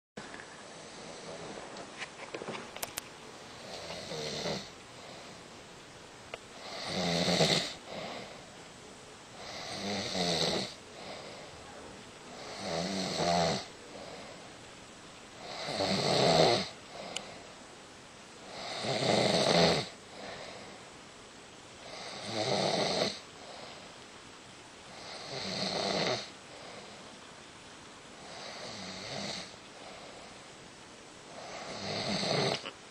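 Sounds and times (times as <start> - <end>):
person snoring: 3.6 - 5.4, 6.6 - 8.4, 9.4 - 11.5, 12.3 - 14.4, 15.4 - 17.4, 18.4 - 20.7, 21.8 - 23.8, 24.9 - 26.8, 28.2 - 30.1, 31.3 - 32.7.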